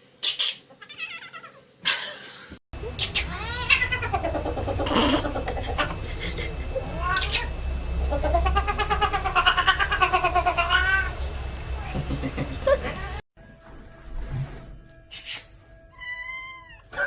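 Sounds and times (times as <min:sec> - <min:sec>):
cat meowing: 0:02.9 - 0:04.4, 0:08.3 - 0:11.2.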